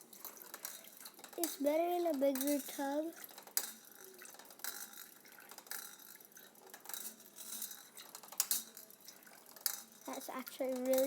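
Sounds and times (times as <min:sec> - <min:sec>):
small hard objects clinking: 0:00.0 - 0:11.0
water splashing in a tub: 0:03.1 - 0:06.8.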